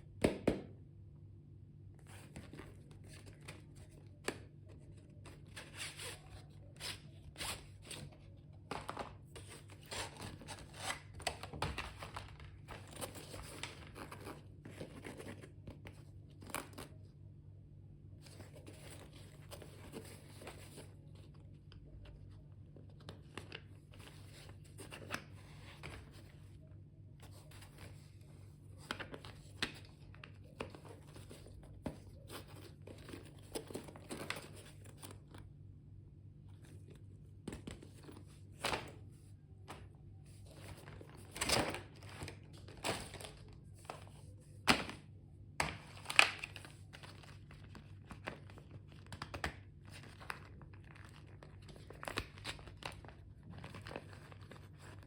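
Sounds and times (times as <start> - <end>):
packaging crinkling and tearing: 45.8 - 55.0.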